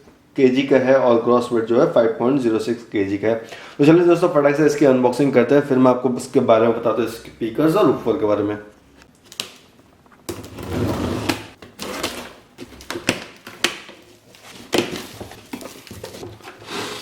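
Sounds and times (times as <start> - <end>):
cardboard rustling and scraping: 10.3 - 17.0.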